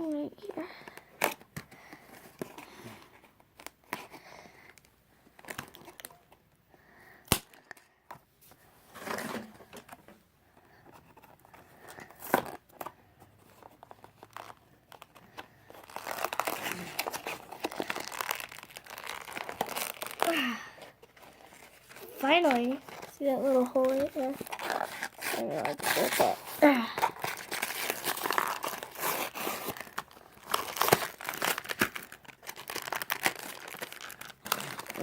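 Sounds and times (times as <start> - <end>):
packaging crinkling and clicking: 4.7 - 6.4, 11.0 - 35.0.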